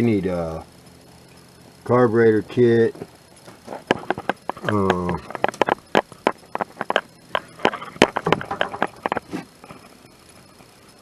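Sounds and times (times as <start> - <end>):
light clicks and knocks: 2.9 - 9.4.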